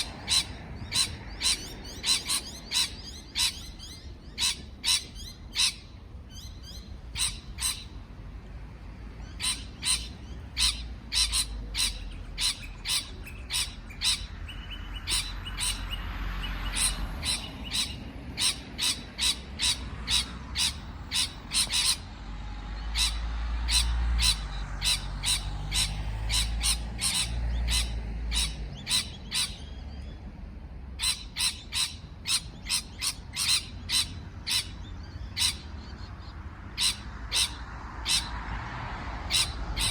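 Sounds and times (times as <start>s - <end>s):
parrot chirping: 0.0s - 8.0s, 9.2s - 22.1s, 22.8s - 29.9s, 31.0s - 38.4s.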